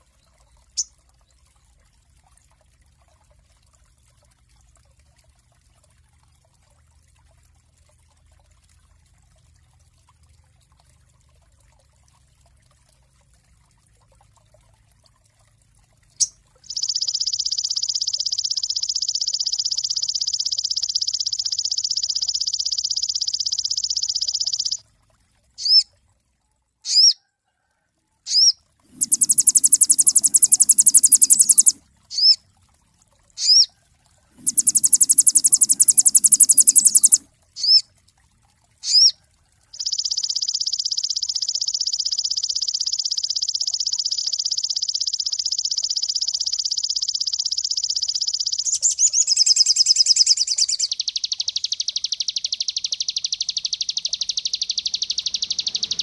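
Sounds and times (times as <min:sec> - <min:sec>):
songbird buzzy trill: 0:16.2 - 0:24.8, 0:28.3 - 0:32.4, 0:34.4 - 0:37.8, 0:39.8 - 0:55.9
high rattling bird trills: 0:28.3 - 0:32.4, 0:33.4 - 0:33.7, 0:34.4 - 0:37.8, 0:48.6 - 0:50.9, 0:53.3 - 0:56.0
sharp rising bird chirps: 0:28.3 - 0:32.4, 0:34.4 - 0:37.8, 0:48.7 - 0:50.9, 0:53.7 - 0:56.0.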